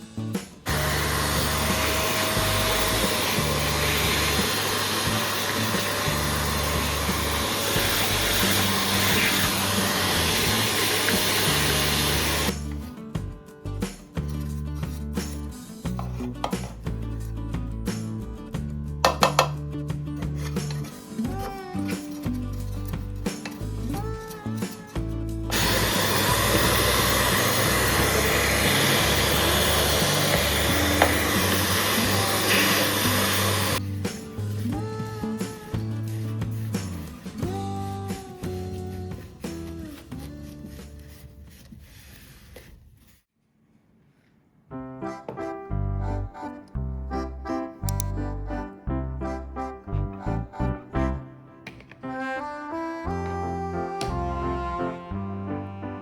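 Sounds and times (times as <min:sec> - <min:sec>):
background music with bass line: 0:00.0 - 0:41.2, 0:44.8 - 0:51.4, 0:52.0 - 0:56.0
blower motor rushing: 0:00.7 - 0:12.6, 0:25.5 - 0:33.8.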